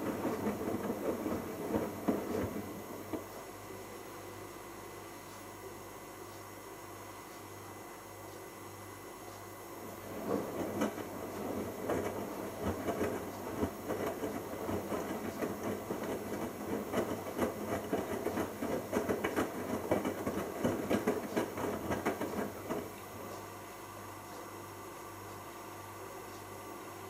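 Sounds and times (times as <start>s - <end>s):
washing machine sloshing and clattering: 0.0s - 3.3s, 9.8s - 23.0s
low steady hum: 0.0s - 27.0s.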